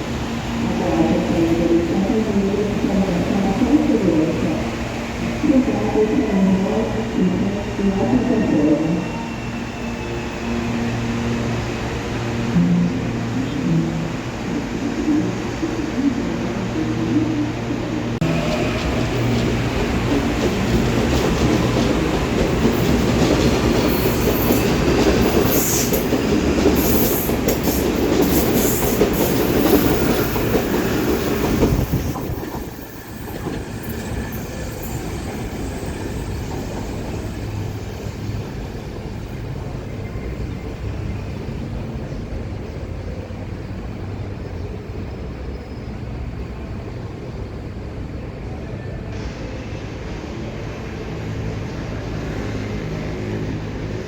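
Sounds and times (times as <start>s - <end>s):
train wheels clattering on rails: 18.2s - 39.1s.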